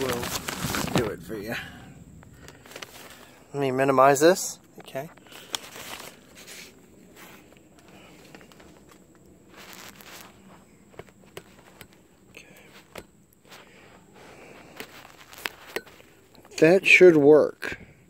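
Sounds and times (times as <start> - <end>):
shuffling footsteps: 4.8 - 17.2.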